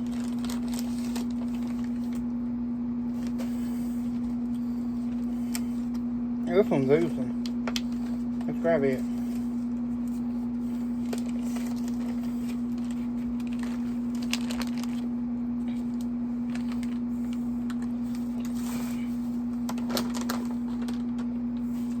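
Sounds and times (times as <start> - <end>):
packaging crinkling and clicking: 0.0 - 2.3, 11.0 - 15.1, 15.9 - 18.7, 19.5 - 21.7
air conditioner humming: 0.0 - 22.0.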